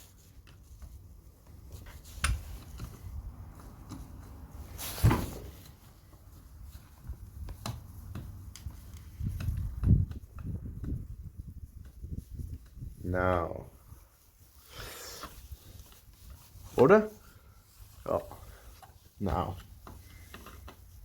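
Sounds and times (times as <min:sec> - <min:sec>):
light clicks and knocks of tools: 0:00.2 - 0:04.6, 0:05.6 - 0:11.2, 0:18.2 - 0:21.0.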